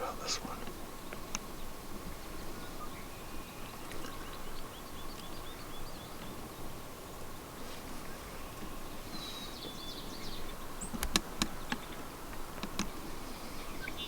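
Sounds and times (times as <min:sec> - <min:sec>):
songbird chirping: 0:00.0 - 0:06.8, 0:08.0 - 0:12.1
outdoor background noise: 0:00.0 - 0:14.0.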